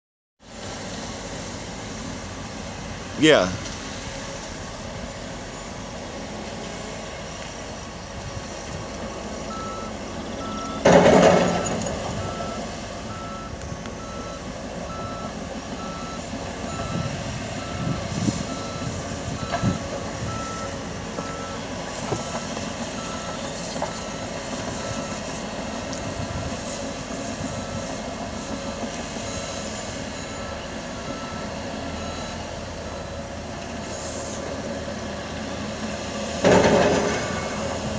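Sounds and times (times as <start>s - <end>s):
diesel machinery running: 0.4s - 37.9s
backup alarm beeping: 9.5s - 10.9s, 11.5s - 21.6s.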